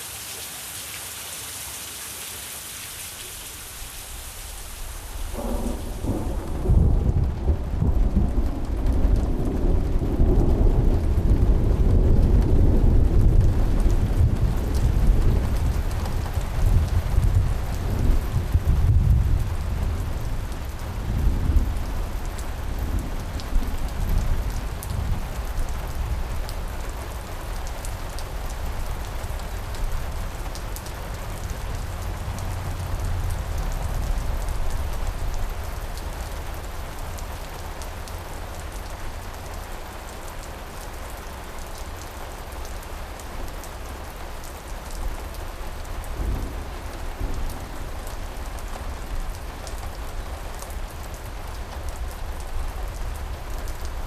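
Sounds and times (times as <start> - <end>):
steady rain falling: 0.0 - 54.0
distant thunder rumble: 5.0 - 26.8, 46.0 - 50.5.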